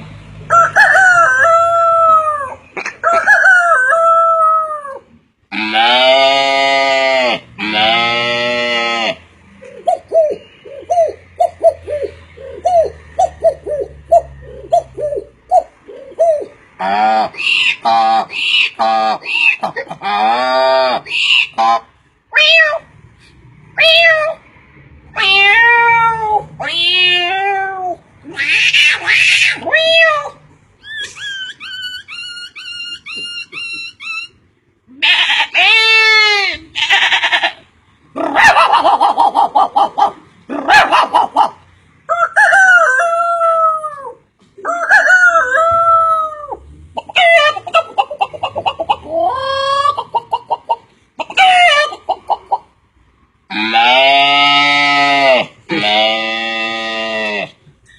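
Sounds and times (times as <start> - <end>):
man imitating animal calls: 1.5 - 22.8, 42.2 - 52.3, 53.5 - 57.9.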